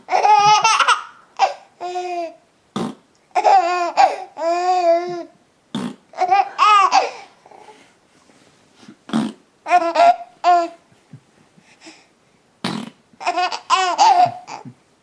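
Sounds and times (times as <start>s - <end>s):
young child laughing: 0.2s - 1.6s, 13.6s - 14.8s.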